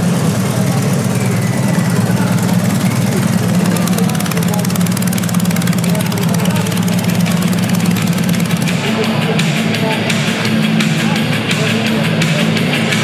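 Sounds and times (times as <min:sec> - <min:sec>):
motorcycle engine idling: 0:00.0 - 0:13.0.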